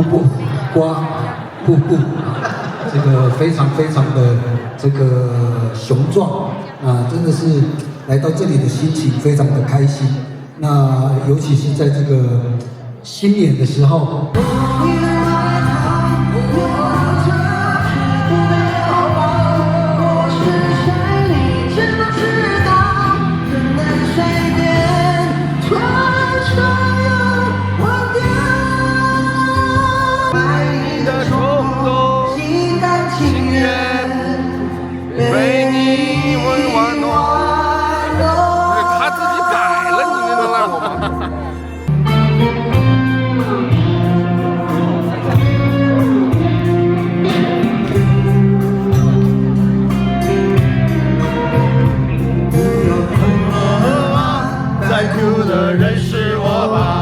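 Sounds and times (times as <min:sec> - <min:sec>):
pop song with singing: 0:14.2 - 0:57.0
bass line: 0:14.4 - 0:57.0
electric guitar: 0:14.4 - 0:57.0
steady drum beat: 0:51.7 - 0:57.0.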